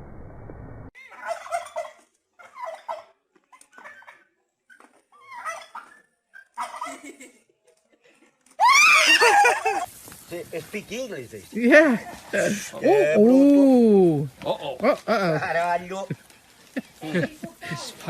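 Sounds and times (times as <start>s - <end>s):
turkey gobbling: 1.0s - 3.2s, 5.3s - 5.9s, 6.5s - 7.0s
shrill cry with sweeping pitch: 8.6s - 9.8s
low hiss: 8.7s - 18.0s.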